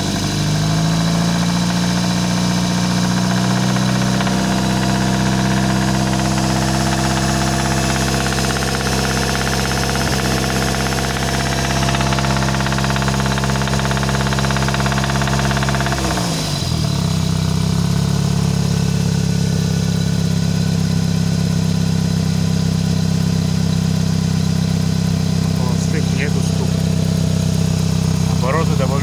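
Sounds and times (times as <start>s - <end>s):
car engine idling: 0.0s - 29.0s
car engine revving with a knock: 0.5s - 17.8s.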